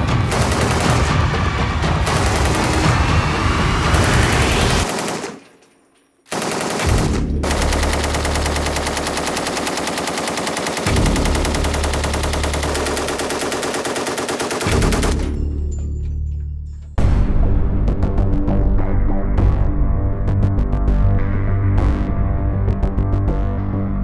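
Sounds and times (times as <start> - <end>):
machine gun firing bursts: 0.0 - 5.4, 6.3 - 15.4.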